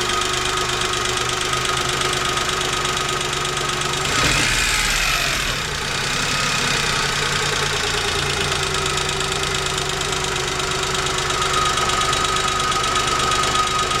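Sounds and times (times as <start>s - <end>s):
car engine idling: 0.0s - 14.0s
steady whining tone: 9.2s - 14.0s.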